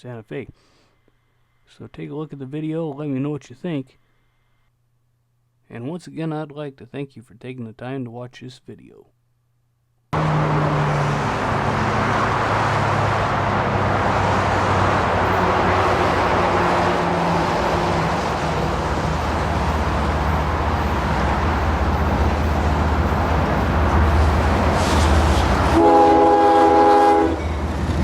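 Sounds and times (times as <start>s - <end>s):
locomotive engine drone: 10.2s - 28.0s
train rushing noise: 10.2s - 28.0s.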